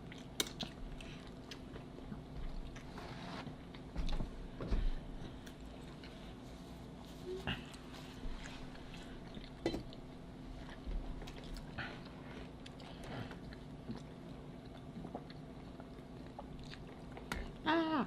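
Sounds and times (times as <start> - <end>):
people chewing with mouth smacks: 0.0 - 17.6.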